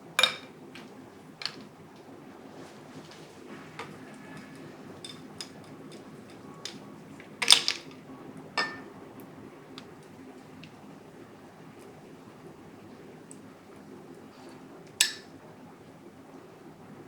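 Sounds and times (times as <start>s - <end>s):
tableware clinking: 0.2s - 1.7s, 3.8s - 8.0s, 8.6s - 9.0s, 15.0s - 15.3s.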